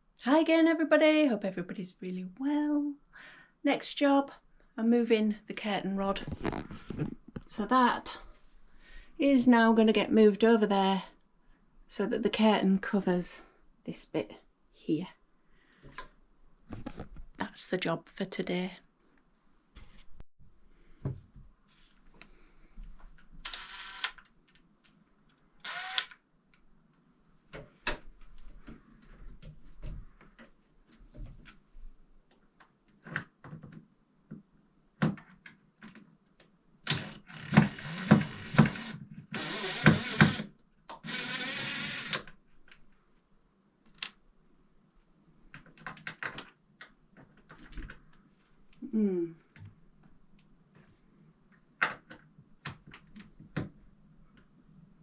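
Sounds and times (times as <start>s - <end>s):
cordless drill running: 23.5s - 24.2s, 25.6s - 26.2s, 37.0s - 42.2s.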